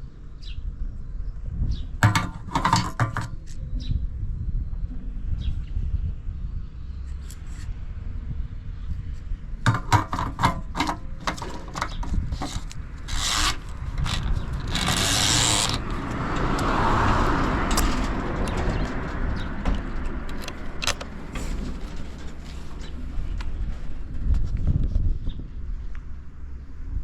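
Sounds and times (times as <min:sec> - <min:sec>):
clicks and knocks: 0:02.0 - 0:03.5, 0:09.7 - 0:23.0.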